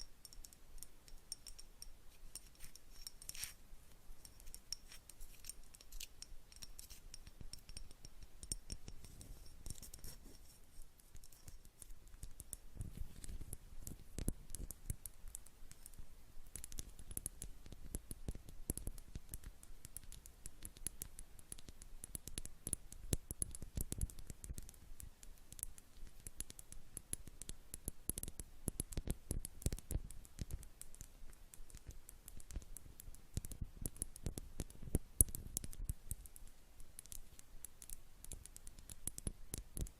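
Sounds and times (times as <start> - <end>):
rapid tapping on a jar: 0.0 - 39.9.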